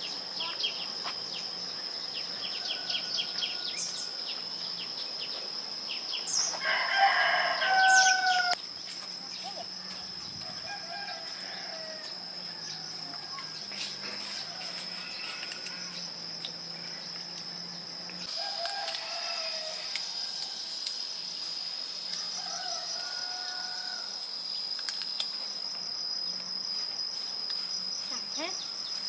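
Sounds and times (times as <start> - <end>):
insects droning: 0.0 - 29.0
rooster crowing: 2.4 - 4.3, 6.5 - 8.6, 9.8 - 16.2, 18.2 - 20.7, 22.1 - 24.2.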